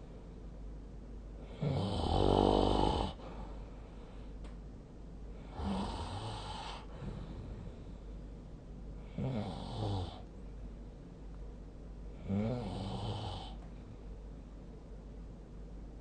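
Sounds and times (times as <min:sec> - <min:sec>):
steady low hum: 0:00.0 - 0:16.0
person snoring: 0:01.4 - 0:03.4, 0:05.4 - 0:07.4, 0:09.0 - 0:10.3, 0:12.2 - 0:13.6.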